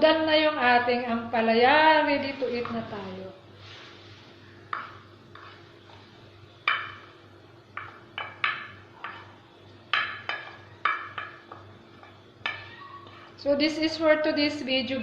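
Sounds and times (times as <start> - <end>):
faint steady hum: 0.0 - 15.0
utensil clinking against a dish: 6.6 - 13.4.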